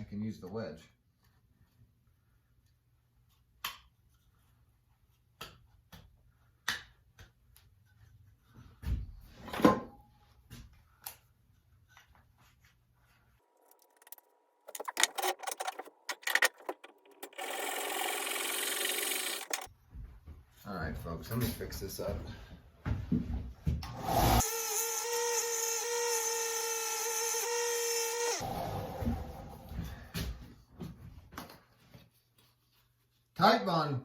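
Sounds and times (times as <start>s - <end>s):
quick clicks: 13.6s - 19.7s
whirring noise: 13.6s - 19.7s.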